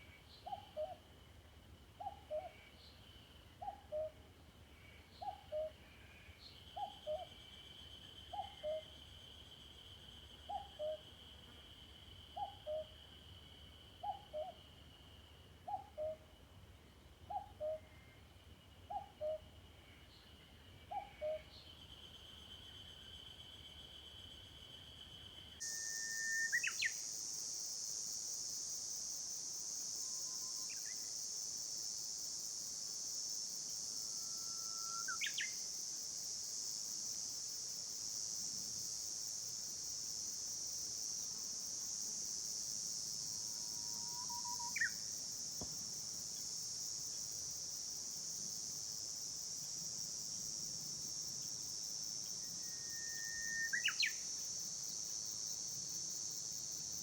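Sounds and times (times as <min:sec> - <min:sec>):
high-pitched insect chorus: 0:04.7 - 0:16.5, 0:17.6 - 0:57.0
bird whistling call: 0:25.8 - 0:26.9, 0:53.0 - 0:54.2.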